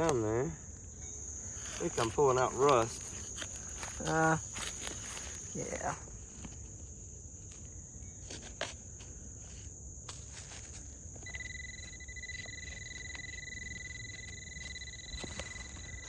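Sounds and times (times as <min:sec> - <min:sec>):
insects chirring: 0:00.0 - 0:16.0
steady high tone: 0:11.2 - 0:16.0.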